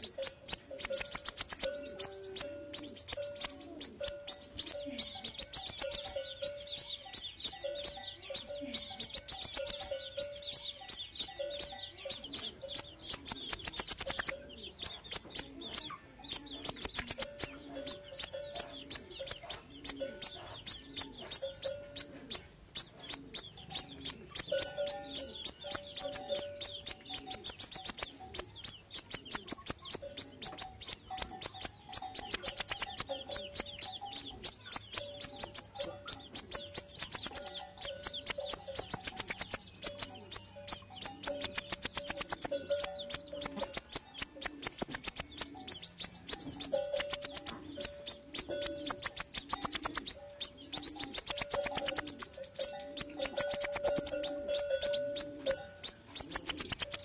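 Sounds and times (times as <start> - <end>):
bird ticking chips and trills: 0.0 - 57.0.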